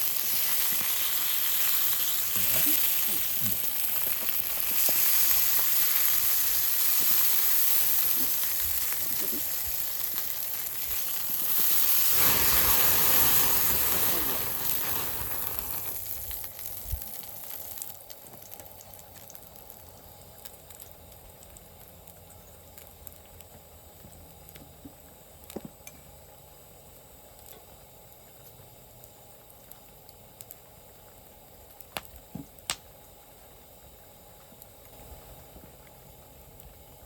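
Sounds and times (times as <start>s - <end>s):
fire pops: 0.0s - 21.9s, 31.8s - 32.9s
wood fire crackling: 0.0s - 25.8s, 27.2s - 37.0s
faint steady hiss: 0.0s - 37.0s.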